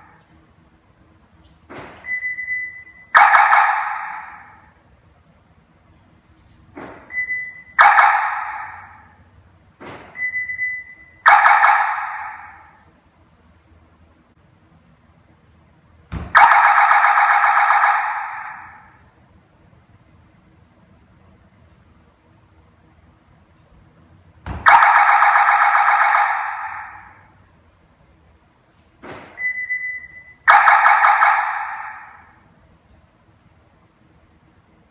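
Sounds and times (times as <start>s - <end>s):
thump: 1.7s - 2.1s, 6.7s - 7.1s, 9.8s - 10.2s, 16.1s - 16.4s, 24.4s - 24.8s, 29.0s - 29.4s
car alarm warbling tone: 2.0s - 4.8s, 7.0s - 9.2s, 10.1s - 12.8s, 16.3s - 19.0s, 24.5s - 27.4s, 29.3s - 32.4s
short sweep and steady beep: 2.1s - 3.2s, 7.1s - 7.8s, 10.2s - 11.2s, 29.4s - 30.4s.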